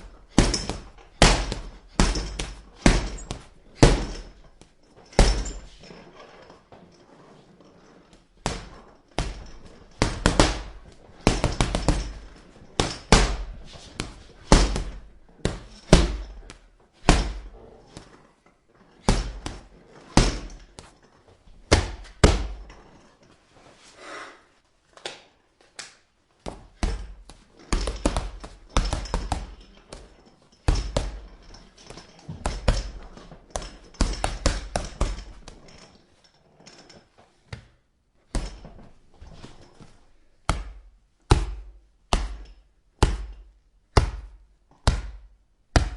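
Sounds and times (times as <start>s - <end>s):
punches thudding on punching bag: 0.1s - 4.4s, 5.2s - 5.7s, 8.4s - 17.6s, 19.0s - 20.6s, 21.7s - 22.7s, 26.4s - 30.1s, 30.7s - 31.3s, 32.3s - 35.6s, 40.5s - 45.9s.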